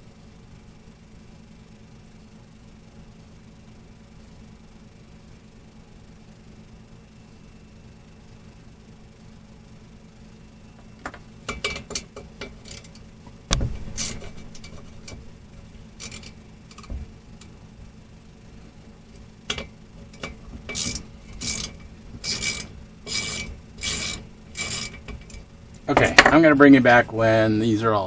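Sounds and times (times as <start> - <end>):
loud knock: 13.5 - 13.9.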